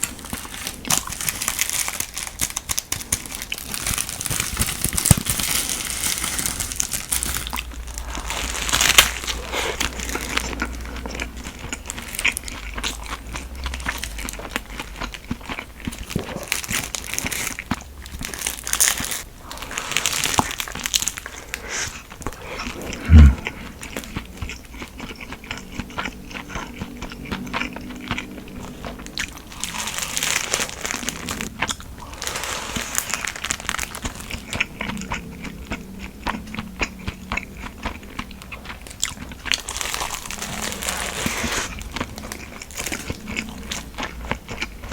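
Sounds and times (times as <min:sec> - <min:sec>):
person chewing food: 0:00.0 - 0:44.9.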